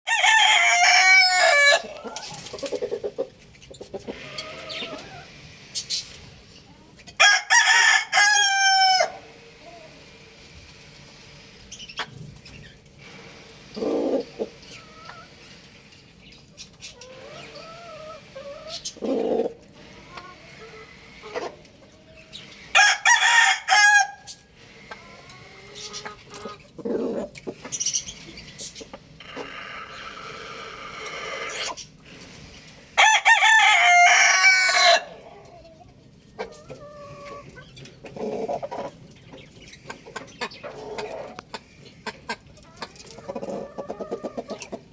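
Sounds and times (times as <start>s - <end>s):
rooster crowing: 0.1s - 2.0s, 7.2s - 9.3s, 22.7s - 24.3s, 33.0s - 35.2s
chickens clucking: 0.1s - 44.9s
soft wavering chicken calls: 0.2s - 10.2s, 13.8s - 44.9s.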